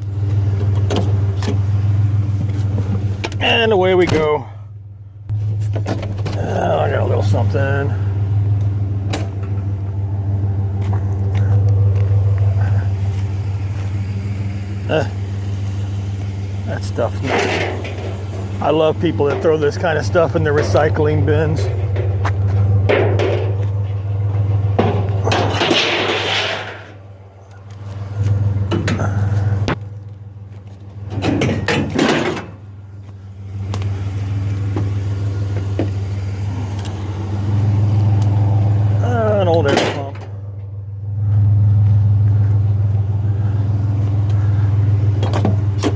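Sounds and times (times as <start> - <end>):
truck engine droning: 0.0 - 45.9
scrap rattling: 16.6 - 29.7.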